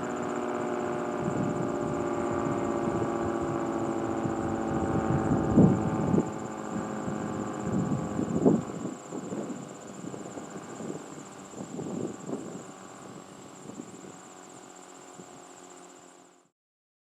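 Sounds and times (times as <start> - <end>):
insects trilling: 0.0 - 16.4
low mechanical rumble: 0.4 - 14.2.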